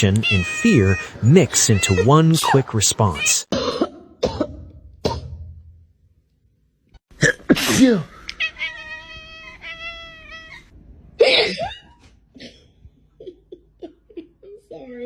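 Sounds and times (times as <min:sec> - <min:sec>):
cat meowing: 0:00.0 - 0:03.5, 0:08.3 - 0:10.7
person sneezing: 0:07.2 - 0:08.1.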